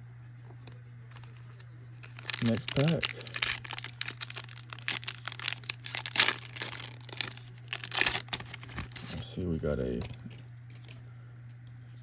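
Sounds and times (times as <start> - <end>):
low electrical hum: 0.0 - 12.0
wrapper tearing and crinkling: 1.1 - 9.2, 10.0 - 11.0.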